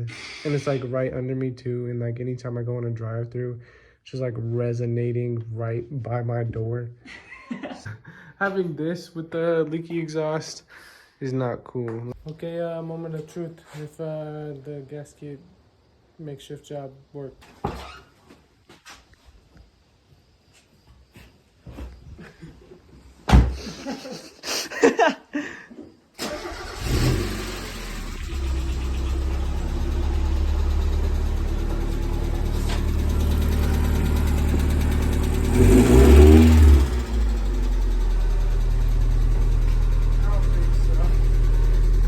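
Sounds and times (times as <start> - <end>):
car engine starting and idling: 26.2 - 42.0.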